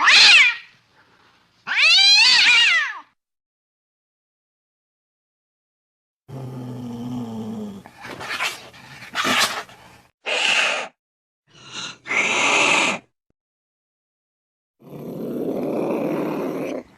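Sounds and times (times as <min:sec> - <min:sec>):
cats hissing and yowling: 0:00.0 - 0:00.7, 0:01.6 - 0:03.1, 0:12.1 - 0:13.1, 0:15.0 - 0:16.9
cat growling: 0:06.3 - 0:09.5, 0:14.8 - 0:16.9.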